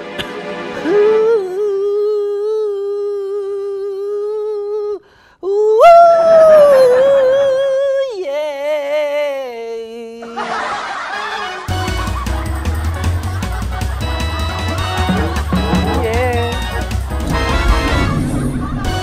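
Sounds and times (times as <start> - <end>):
person humming: 0.8 - 10.2, 15.1 - 16.8.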